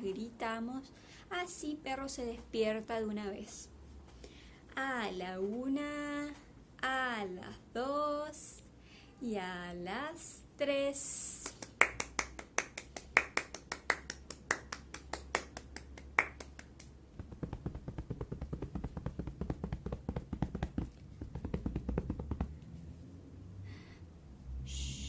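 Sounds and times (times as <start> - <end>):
hands clapping: 11.4 - 22.4.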